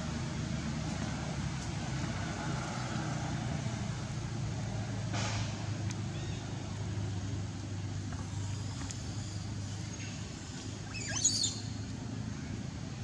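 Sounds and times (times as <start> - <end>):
low engine rumble: 0.0 - 13.0
baby monkey squealing: 10.9 - 11.6.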